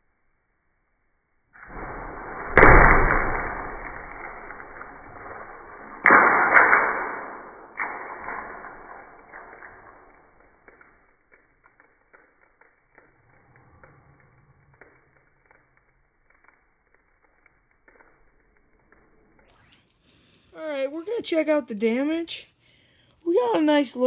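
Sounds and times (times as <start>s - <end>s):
arrow cracks on padlock: 1.6s - 11.1s.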